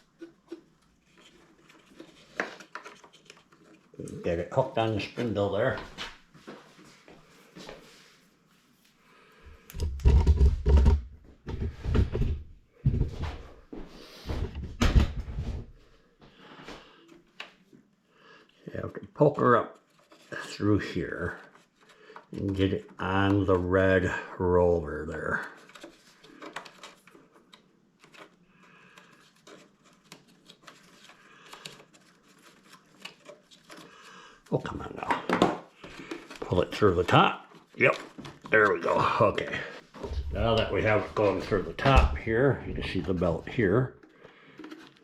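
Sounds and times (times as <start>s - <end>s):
small clicks and rustles: 0.0s - 4.2s, 19.7s - 20.4s, 25.4s - 38.8s, 44.0s - 45.0s
plastic scraping and rubbing: 0.0s - 5.8s, 9.7s - 12.4s, 19.6s - 24.1s, 24.8s - 45.0s.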